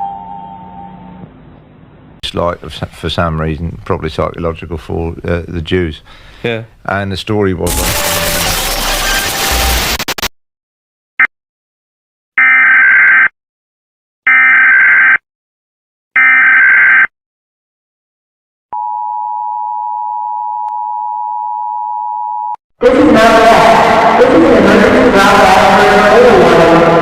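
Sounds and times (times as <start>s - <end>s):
digital data screech bursts: 7.7s - 10.3s.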